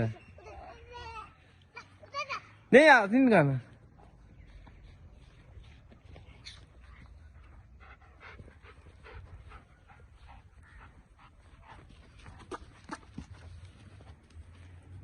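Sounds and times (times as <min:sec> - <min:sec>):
dog panting quickly: 0:06.7 - 0:13.4.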